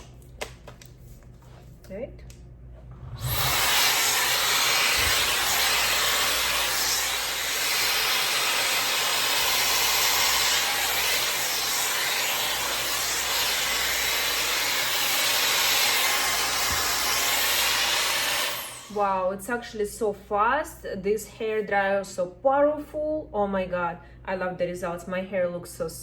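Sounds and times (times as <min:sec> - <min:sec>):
hot-air styler blowing: 0:02.8 - 0:19.2.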